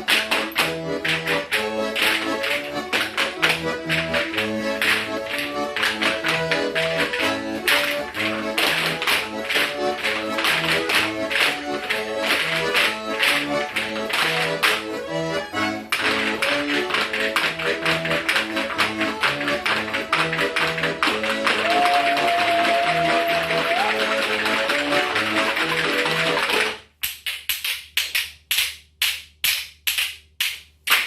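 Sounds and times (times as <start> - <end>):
sharp tapping beat: 0.0 - 22.4
accordion playing folk dance tune: 0.0 - 26.8.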